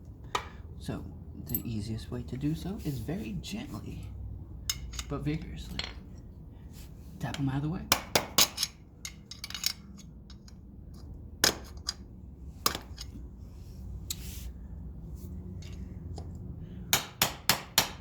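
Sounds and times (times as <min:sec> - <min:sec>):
hammer tapping metal pry bar: 0:07.4 - 0:08.8, 0:16.9 - 0:18.0.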